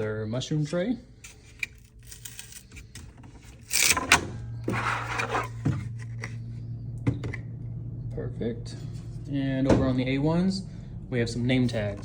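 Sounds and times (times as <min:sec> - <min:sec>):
steady low hum: 0:00.0 - 0:12.0
rustling scrape: 0:04.7 - 0:06.3.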